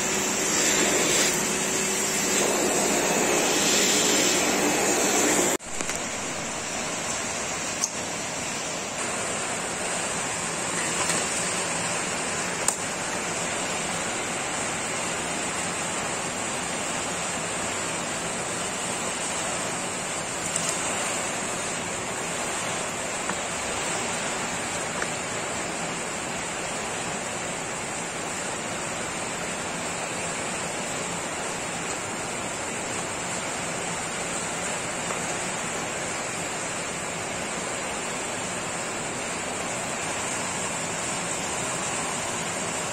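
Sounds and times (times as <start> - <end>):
vacuum cleaner running: 0.0 - 7.6, 19.0 - 25.0.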